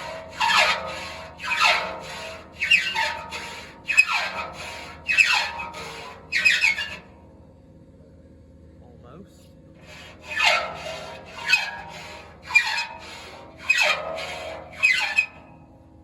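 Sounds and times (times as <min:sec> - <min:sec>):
hand file rasping on saw teeth: 0:00.0 - 0:07.0, 0:09.9 - 0:15.4.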